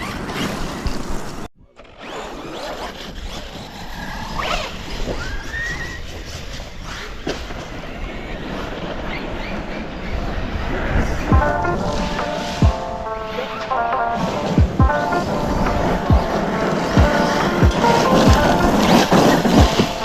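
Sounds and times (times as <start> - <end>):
rc car motor whining: 1.7 - 10.4.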